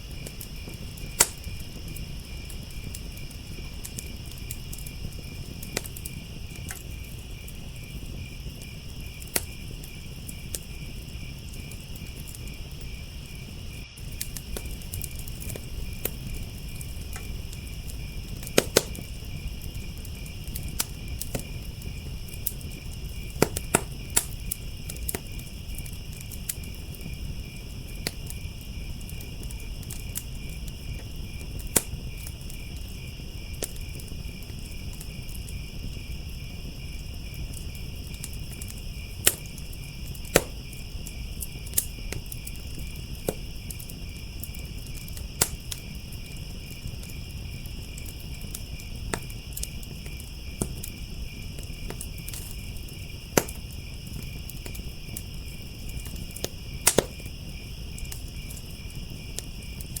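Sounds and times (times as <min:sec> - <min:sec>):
crickets trilling: 0:00.0 - 1:00.0
wood fire crackling and popping: 0:00.0 - 1:00.0.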